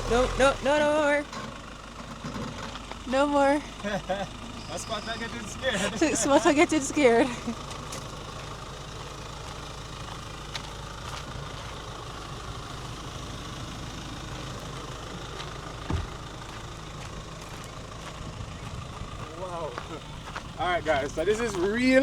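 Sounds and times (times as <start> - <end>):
truck engine running low: 0.0 - 22.0
short thud: 15.9 - 16.2.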